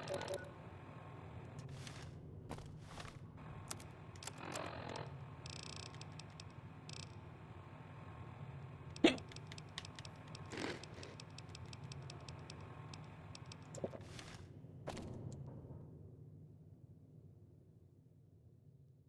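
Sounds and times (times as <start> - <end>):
man hiccuping: 9.0 - 9.4.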